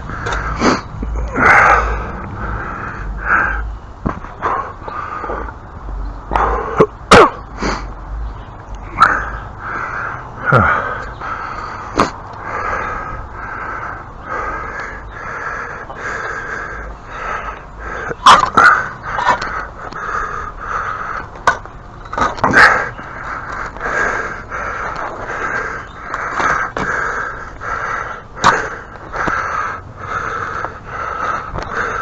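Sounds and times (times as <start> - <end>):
animal calling: 13.7 - 21.2.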